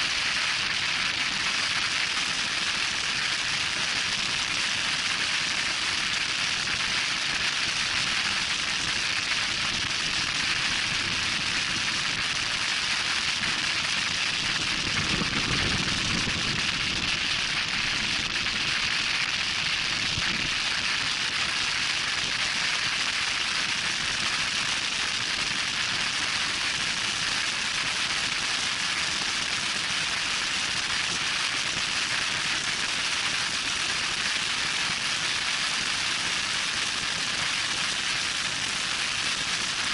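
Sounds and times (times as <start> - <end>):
wind rushing over microphone: 13.3 - 20.7.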